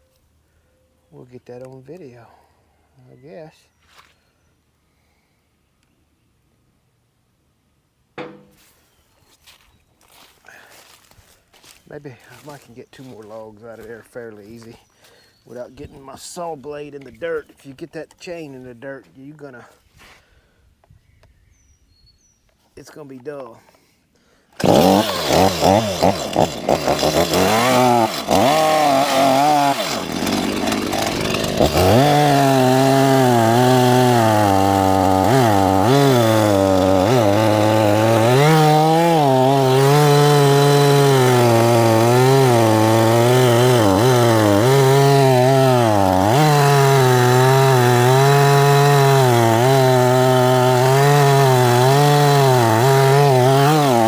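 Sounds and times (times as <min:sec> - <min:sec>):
chainsaw revving and cutting logs: 0:10.1 - 0:14.6, 0:24.6 - 0:54.0.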